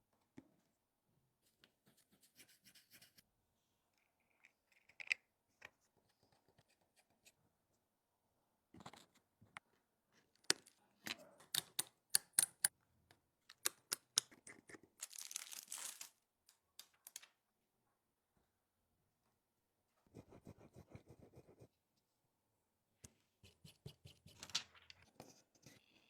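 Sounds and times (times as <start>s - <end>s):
tools clicking and tapping: 10.4s - 12.8s, 13.5s - 14.8s.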